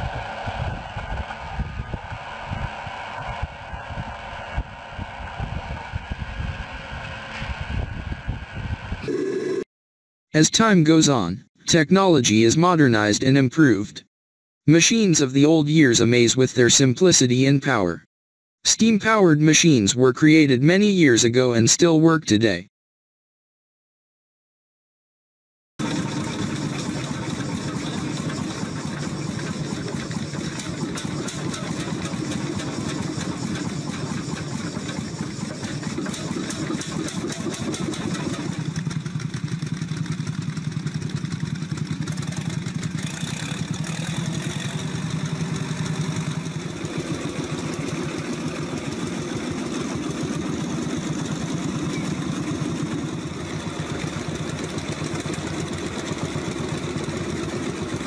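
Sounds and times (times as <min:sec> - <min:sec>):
old engine running: 0:25.8 - 0:58.0.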